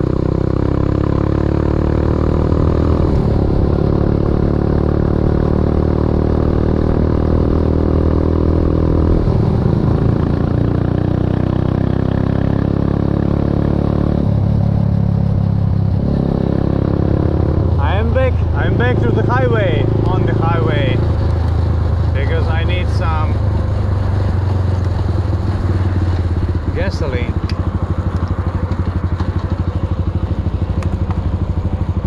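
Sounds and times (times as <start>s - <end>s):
motorbike engine running: 0.0s - 32.0s
road and wind noise: 0.0s - 32.0s.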